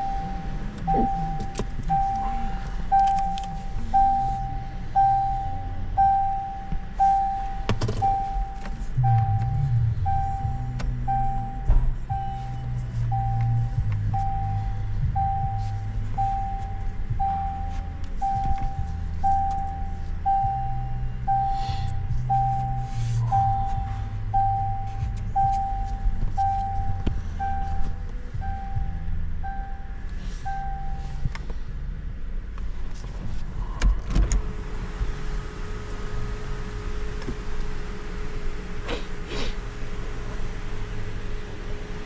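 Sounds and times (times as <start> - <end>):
electronic beeping: 0.0 - 31.3
steady lower tone: 0.0 - 32.3
low rumbling hum: 0.0 - 42.0.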